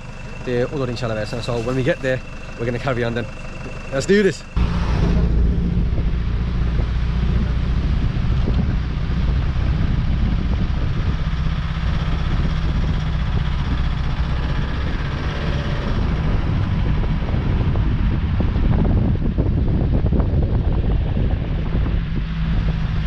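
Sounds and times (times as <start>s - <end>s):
low engine drone: 0.0s - 23.0s
road noise: 0.0s - 23.0s
wind buffeting microphone: 4.6s - 23.0s.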